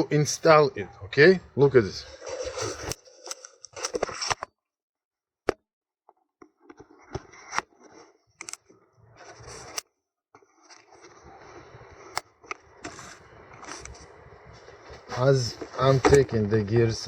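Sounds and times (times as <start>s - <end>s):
clicks and scrapes of part handled: 2.2s - 4.5s, 6.6s - 9.9s, 12.1s - 14.0s.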